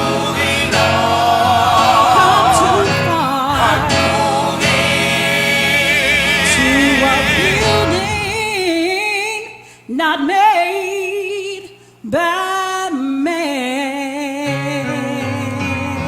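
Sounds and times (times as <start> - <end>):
lower voices singing: 0.0 - 9.0
person singing gospel: 0.0 - 9.3.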